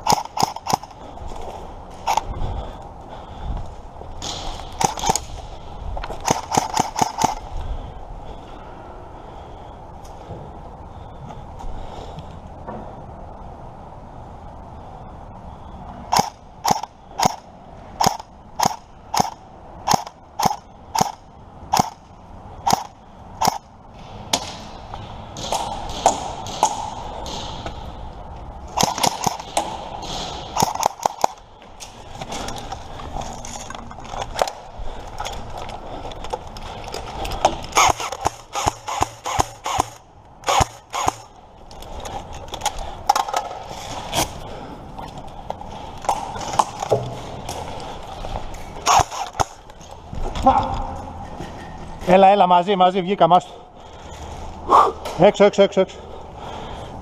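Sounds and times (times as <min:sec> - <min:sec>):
movement and rustling: 0:23.8 - 0:39.3, 0:40.7 - 0:55.3
airsoft gun shots: 0:37.8 - 0:41.3.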